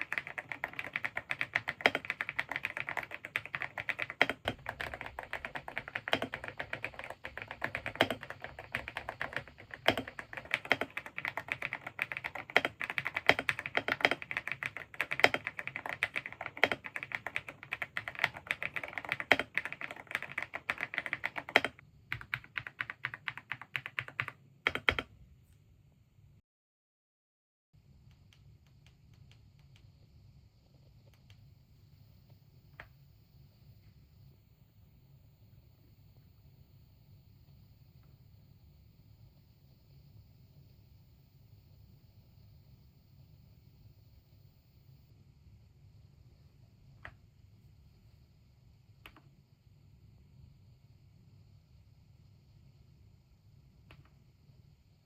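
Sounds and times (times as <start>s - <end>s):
mechanical keyboard typing: 0.0s - 25.1s.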